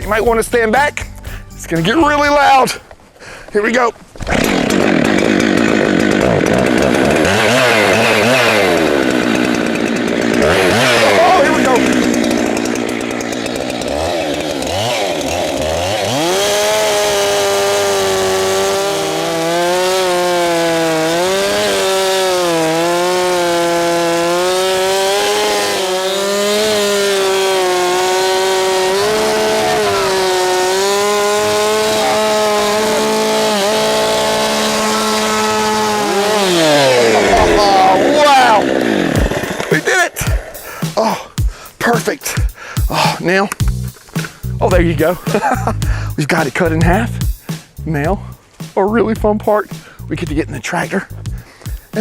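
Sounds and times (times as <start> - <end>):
chainsaw cutting wood: 4.1 - 48.8, 49.4 - 52.0.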